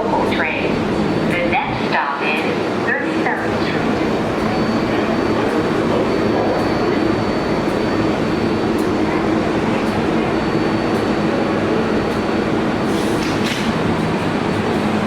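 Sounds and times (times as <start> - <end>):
subway train rumbling: 0.0 - 15.0.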